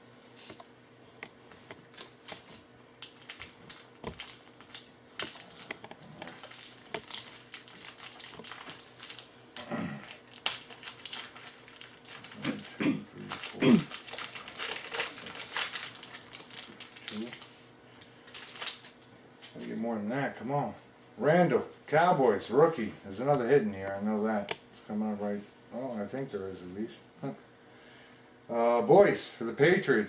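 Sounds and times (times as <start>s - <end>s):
trading cards clicking and rustling: 1.6s - 9.3s.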